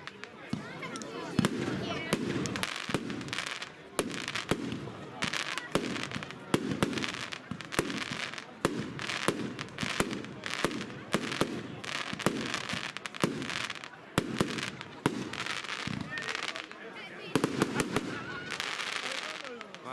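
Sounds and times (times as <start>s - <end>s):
firework shots banging: 0.0s - 16.7s, 17.4s - 19.9s
crackling hiss: 17.4s - 19.9s.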